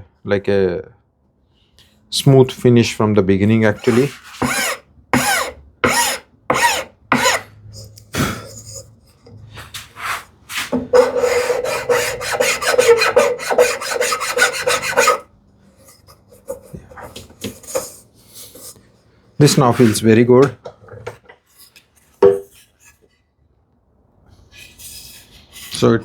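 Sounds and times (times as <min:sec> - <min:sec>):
hand plane scraping wood: 0:03.7 - 0:07.5, 0:09.8 - 0:15.2, 0:19.4 - 0:20.2.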